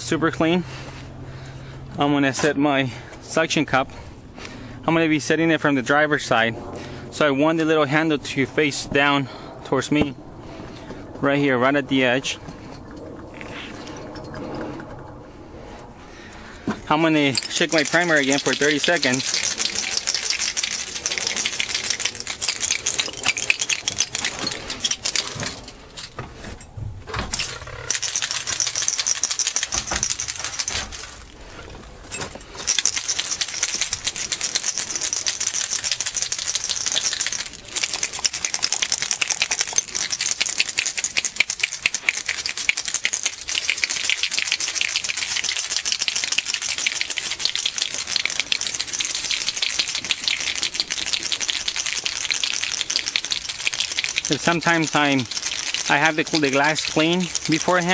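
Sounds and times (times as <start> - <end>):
ball rattling in shaken bottle: 17.0 - 26.2, 27.3 - 31.5, 32.4 - 57.9.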